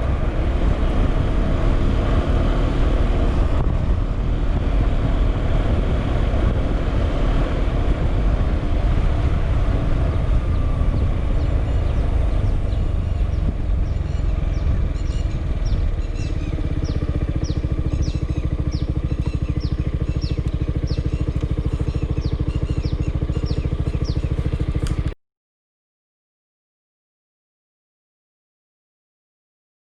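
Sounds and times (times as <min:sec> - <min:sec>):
wind rush: 0:00.0 - 0:16.8
scooter engine: 0:00.0 - 0:25.2.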